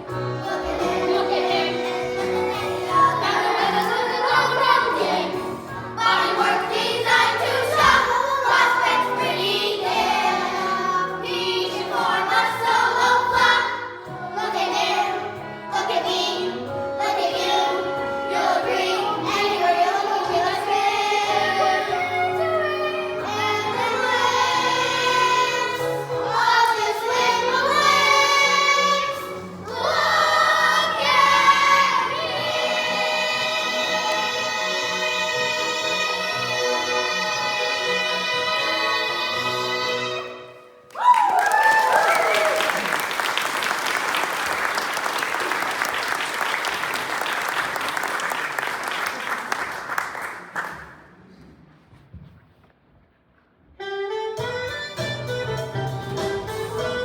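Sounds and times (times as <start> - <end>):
young voices singing in chorus: 0.0 - 40.3
musical accompaniment: 0.0 - 49.2, 53.7 - 57.0.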